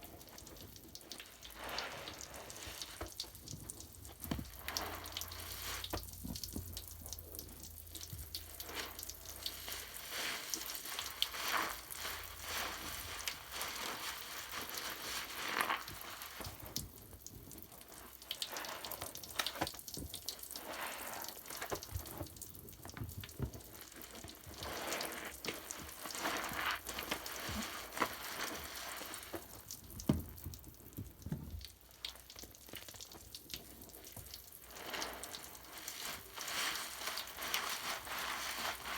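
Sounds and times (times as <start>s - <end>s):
bath foam crackling and fizzing: 0.0s - 38.9s.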